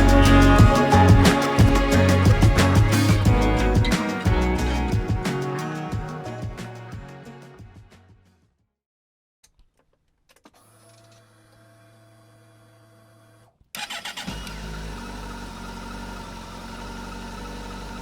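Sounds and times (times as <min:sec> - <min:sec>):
motorcycle starter cranking: 0:13.8 - 0:14.8.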